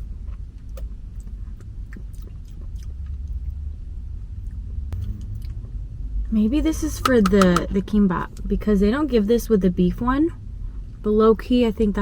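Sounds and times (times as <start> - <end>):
soft chewing: 0.0 - 3.6
steady low rumble: 0.0 - 12.0
spoon tapping container: 7.0 - 7.6.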